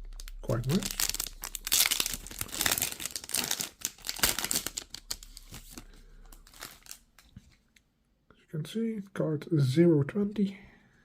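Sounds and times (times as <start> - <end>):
packaging crinkling: 0.0 - 7.6.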